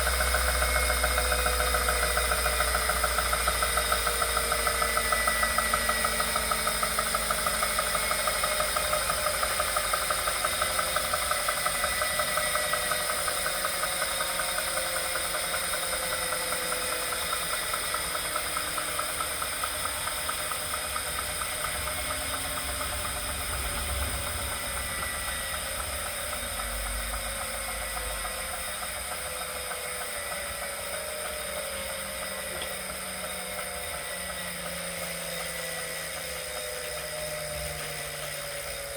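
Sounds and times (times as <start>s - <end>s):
flywheel whine falling in pitch: 0.0s - 38.9s
rhythmic knocking: 0.0s - 38.9s.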